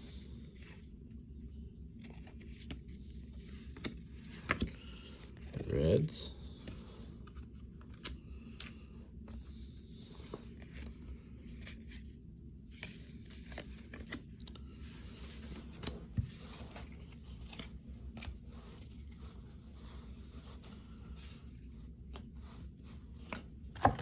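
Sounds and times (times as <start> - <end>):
cards flipped by hand: 2.0 - 4.7, 12.7 - 18.9
card rustle: 2.0 - 12.1, 12.7 - 19.2.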